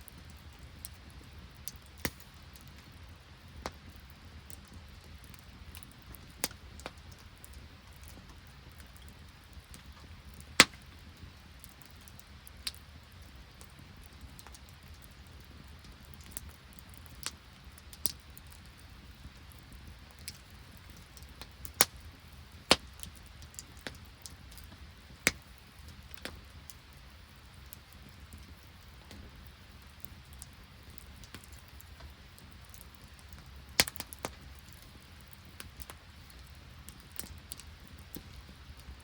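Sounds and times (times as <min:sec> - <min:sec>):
campfire crackling: 0:00.0 - 0:39.0
sharp fire pops: 0:02.0 - 0:02.4, 0:09.7 - 0:11.2, 0:22.7 - 0:25.5, 0:33.7 - 0:36.0.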